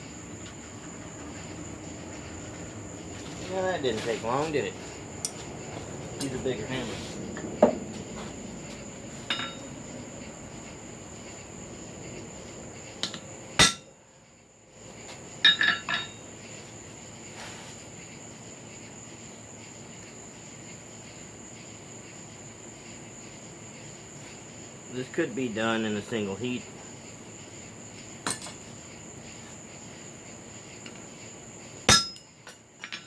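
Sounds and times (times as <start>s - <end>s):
hammer striking steel on anvil: 9.3s - 9.6s, 13.0s - 13.9s, 15.5s - 16.2s, 31.9s - 32.3s.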